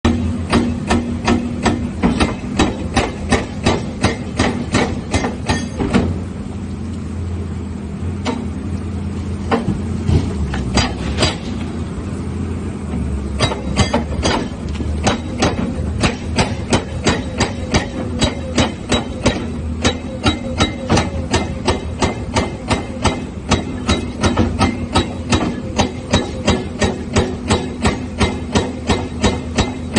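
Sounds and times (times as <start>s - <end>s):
sharp metallic knocks: 0.1s - 6.2s, 8.2s - 8.6s, 9.5s - 11.6s, 13.4s - 29.9s
diesel engine humming: 0.1s - 29.9s.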